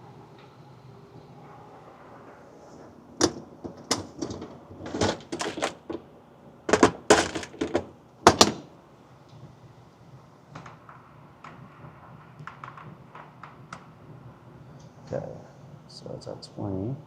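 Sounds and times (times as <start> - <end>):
sharp knocks and clacks: 3.2 - 6.0, 6.7 - 8.6, 12.4 - 13.9.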